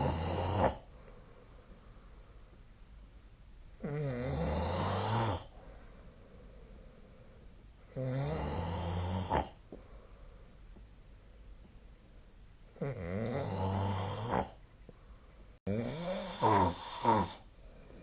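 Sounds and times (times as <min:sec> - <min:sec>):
person snoring: 0:00.0 - 0:00.9, 0:03.8 - 0:05.6, 0:07.9 - 0:09.6, 0:12.8 - 0:14.6, 0:15.7 - 0:17.5.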